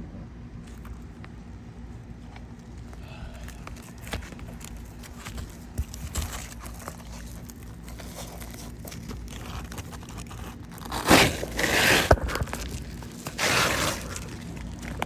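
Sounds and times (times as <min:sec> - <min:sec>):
roof shingles crackling and scraping: 0:02.2 - 0:15.0.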